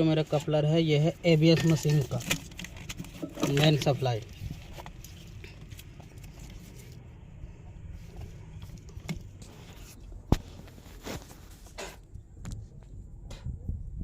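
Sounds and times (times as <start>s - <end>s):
connector being handled and knocked: 1.4s - 6.8s, 8.1s - 10.5s.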